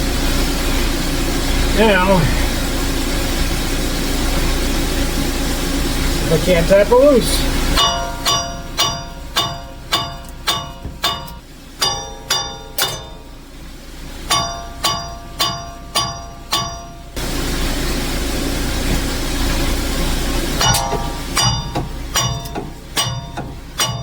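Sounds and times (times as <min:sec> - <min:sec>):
hammer striking steel hub: 0:07.8 - 0:13.4, 0:14.3 - 0:17.2, 0:20.6 - 0:24.0.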